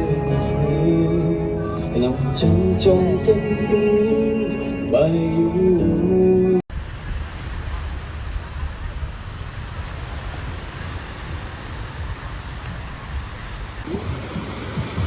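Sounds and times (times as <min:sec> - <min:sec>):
wind and sea noise: 0:00.9 - 0:15.0
wind buffeting the microphone: 0:06.8 - 0:15.0.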